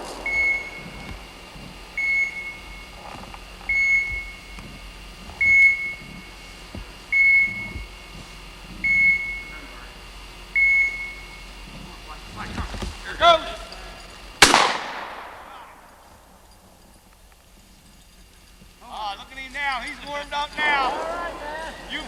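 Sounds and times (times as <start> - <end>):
high-pitched electronic beeps: 0.2 - 1.3.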